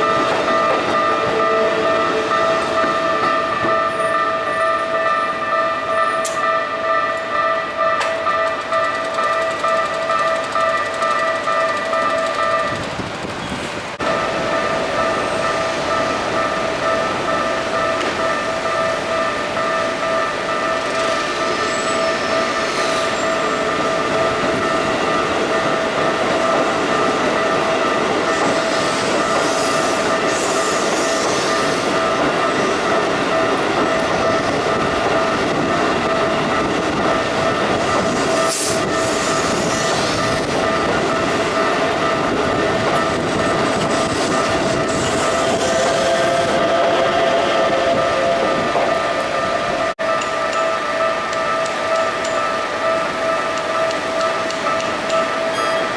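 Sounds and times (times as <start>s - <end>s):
railroad crossing bell ringing: 0.0s - 55.9s
train wheels clattering on rails: 5.8s - 55.9s.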